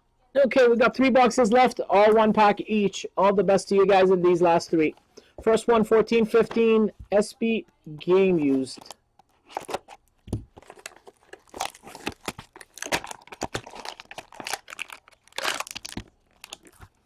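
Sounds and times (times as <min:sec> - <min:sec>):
plastic wrapping tearing and crinkling: 0:08.8 - 0:17.0.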